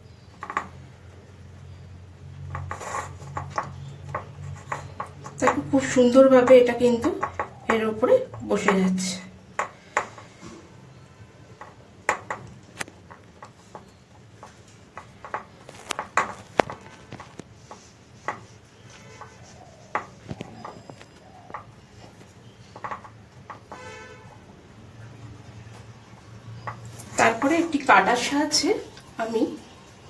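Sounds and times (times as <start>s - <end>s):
hands tapping dough into mold: 6.4s - 10.4s.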